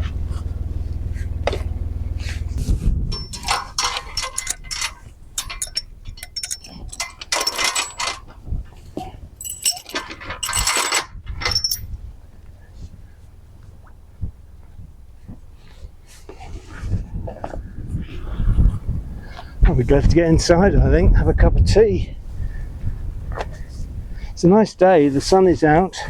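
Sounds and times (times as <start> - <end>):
steady low drone: 0.0 - 8.2
metal fittings clinking and rattling: 3.1 - 11.9.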